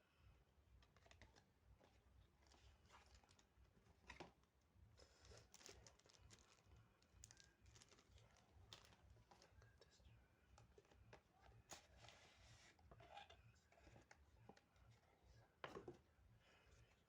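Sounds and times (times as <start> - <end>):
packaging rustling: 5.4 - 9.6.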